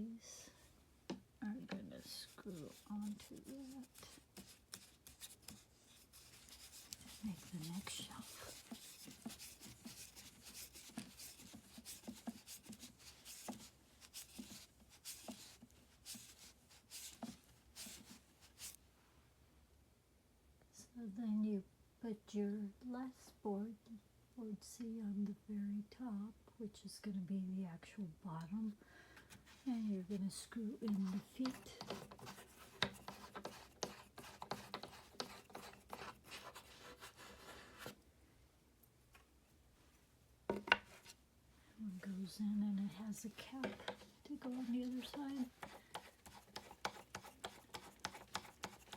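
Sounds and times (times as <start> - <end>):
plastic tubes scraping and knocking: 1.6 - 18.2, 29.2 - 38.0, 43.2 - 48.9
plastic scraping against board: 30.9 - 38.0, 43.6 - 48.9.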